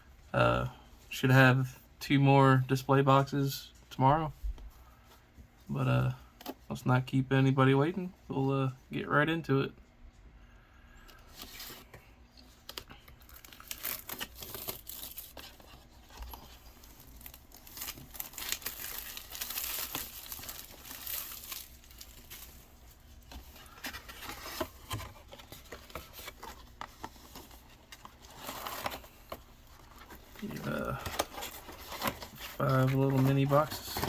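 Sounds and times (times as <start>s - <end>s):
plastic shrink-wrap tearing: 13.2s - 15.5s, 16.3s - 22.6s.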